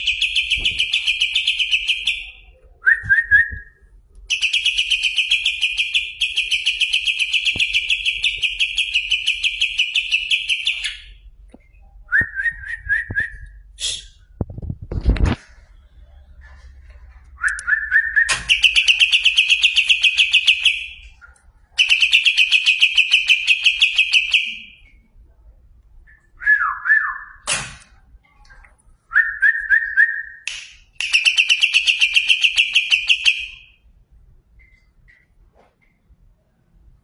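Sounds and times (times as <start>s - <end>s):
bird chattering song: 0.0s - 2.5s, 4.3s - 11.2s, 18.4s - 21.2s, 21.8s - 24.8s
sharp click: 30.4s - 31.2s.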